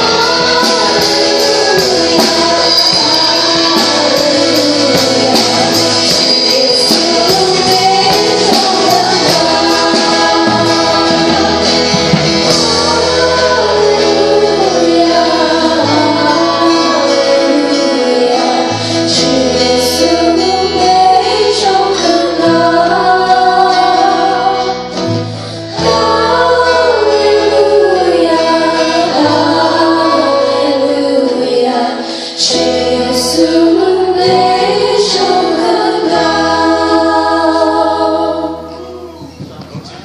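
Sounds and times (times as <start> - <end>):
steady low bass notes: 0.0 - 17.2
band playing worship song: 0.0 - 40.0
guitar: 0.0 - 40.0
person singing: 0.0 - 40.0.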